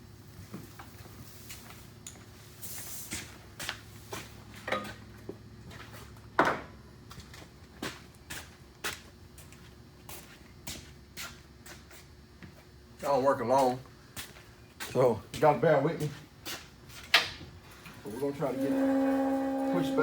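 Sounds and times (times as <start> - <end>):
low steady hum: 17.6 - 20.0.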